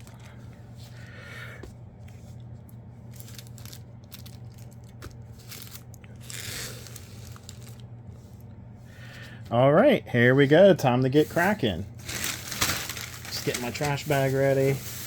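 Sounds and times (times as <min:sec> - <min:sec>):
low steady hum: 0:00.0 - 0:15.0
foil packs crinkling: 0:03.1 - 0:07.9, 0:11.1 - 0:15.0.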